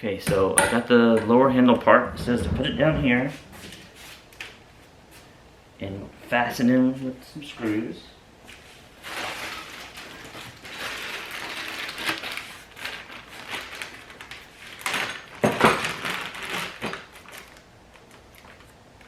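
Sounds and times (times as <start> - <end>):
plastic parts rustling and scraping: 9.0 - 18.7.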